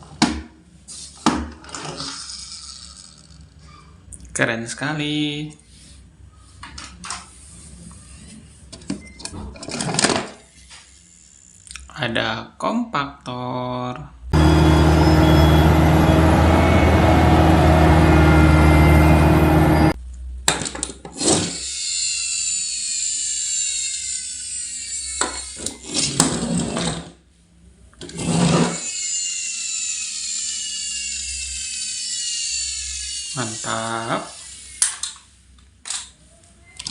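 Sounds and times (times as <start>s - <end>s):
toy motor and gears whirring: 1.9s - 3.9s, 10.4s - 11.8s, 21.2s - 27.0s, 28.0s - 36.1s.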